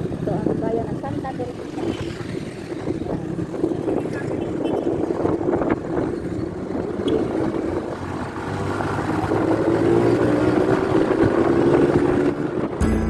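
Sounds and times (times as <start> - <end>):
vehicle engine driving: 12.8 - 13.0.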